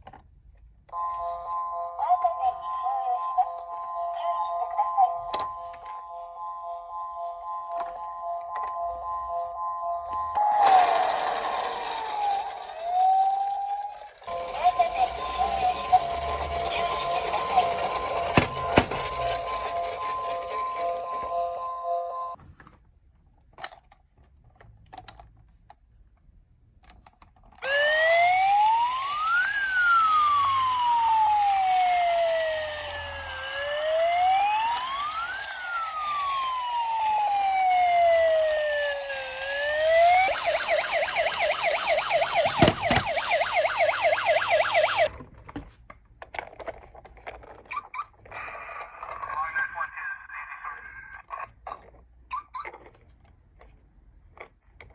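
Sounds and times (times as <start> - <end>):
toy police car siren: 1.0 - 22.4, 27.6 - 45.2, 47.7 - 51.4.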